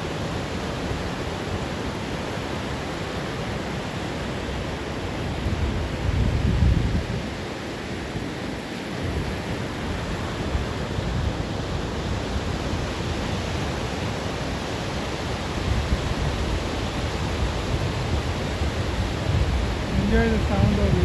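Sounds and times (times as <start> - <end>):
surf breaking on a beach: 0.0 - 21.0.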